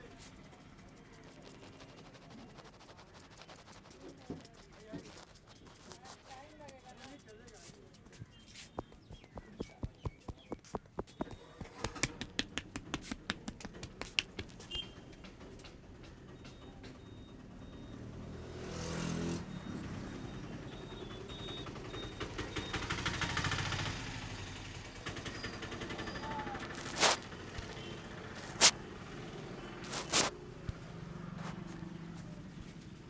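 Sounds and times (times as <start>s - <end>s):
hands rubbing head: 0.0s - 14.6s, 25.0s - 27.8s, 28.4s - 28.7s, 29.8s - 30.3s
light tapping on head: 8.1s - 14.6s.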